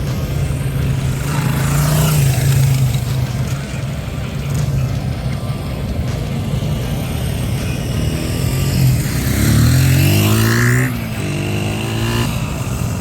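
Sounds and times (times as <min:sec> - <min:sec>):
motorcycle engine pulling away: 0:06.8 - 0:13.0.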